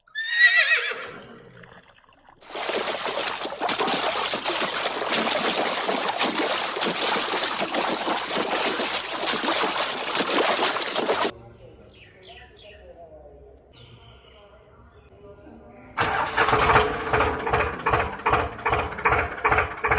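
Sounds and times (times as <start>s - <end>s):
running splashing water: 0.5s - 11.3s.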